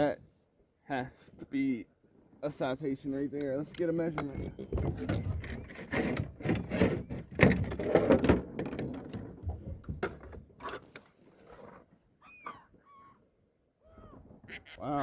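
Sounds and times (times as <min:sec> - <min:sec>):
knocks and scrapes in a kayak: 0:03.1 - 0:12.7.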